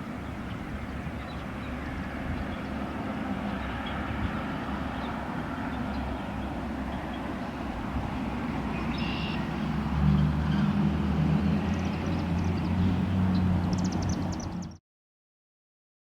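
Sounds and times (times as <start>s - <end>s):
distant road traffic rumble: 0.0s - 14.8s.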